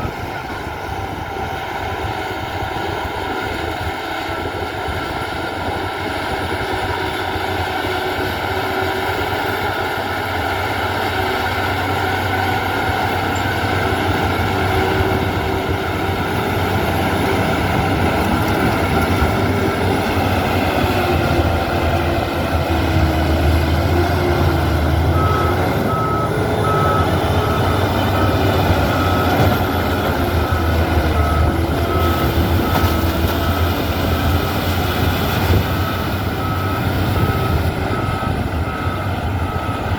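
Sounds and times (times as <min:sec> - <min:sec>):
heavy machine engine rumbling: 0:00.0 - 0:39.9
back-up alarm beeping: 0:17.2 - 0:39.9.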